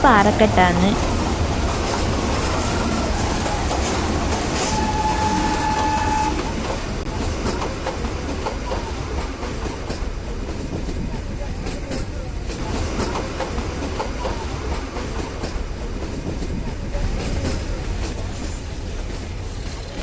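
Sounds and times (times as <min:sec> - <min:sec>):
train rumble and wheel clatter: 0:00.0 - 0:20.0
train horn: 0:02.4 - 0:07.0.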